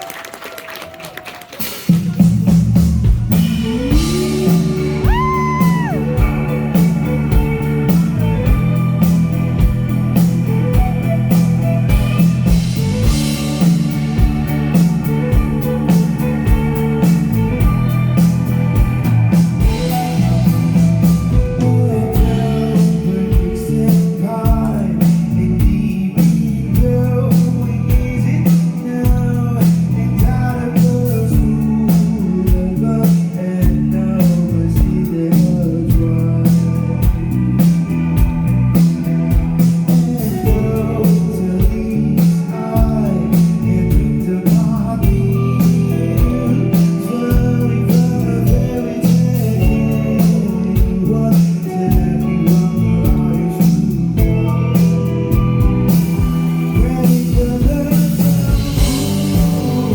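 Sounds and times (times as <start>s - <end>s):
bass guitar: 1.6s - 59.9s
electric guitar: 1.6s - 59.9s
steady drum beat: 1.6s - 59.9s.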